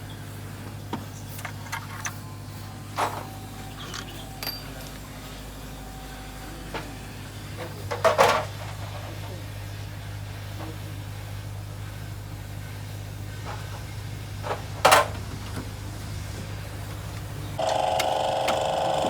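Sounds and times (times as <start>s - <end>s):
steady low hum: 0.0s - 19.0s
sharp knocks and clinks: 3.8s - 5.0s.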